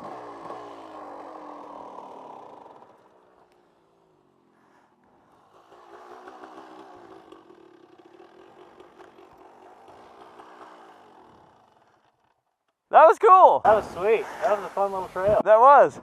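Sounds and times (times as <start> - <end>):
two-stroke dirt bike engine idling: 0.0 - 12.8.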